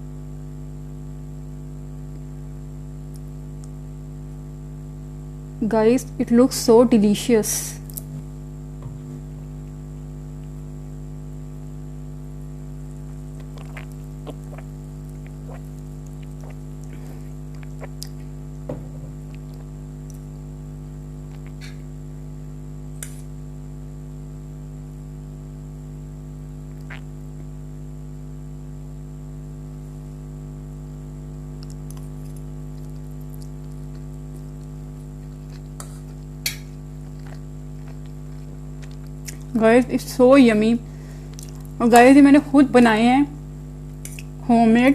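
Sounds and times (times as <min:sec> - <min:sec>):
electrical hum: 0:00.0 - 0:44.9
mouth smacks eating noodles: 0:13.3 - 0:18.4, 0:21.3 - 0:21.9, 0:26.7 - 0:27.2, 0:31.6 - 0:39.5, 0:44.0 - 0:44.4.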